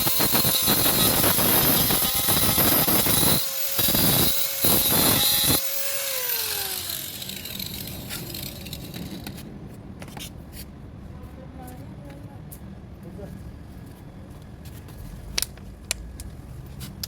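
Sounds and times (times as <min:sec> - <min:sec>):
power tool grinding metal: 0:00.0 - 0:09.4.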